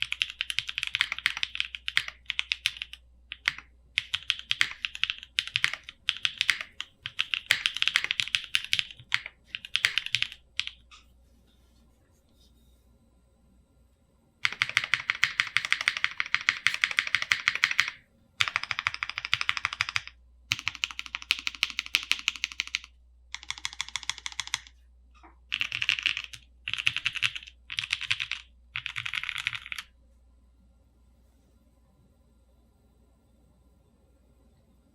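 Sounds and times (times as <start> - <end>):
typing on mechanical keyboard: 0.0 - 10.8, 14.4 - 29.9.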